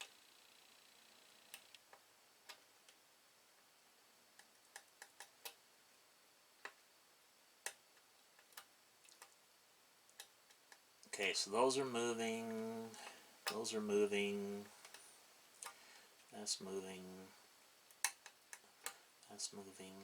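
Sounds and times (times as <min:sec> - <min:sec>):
faint metallic clicks: 0:14.6 - 0:16.3.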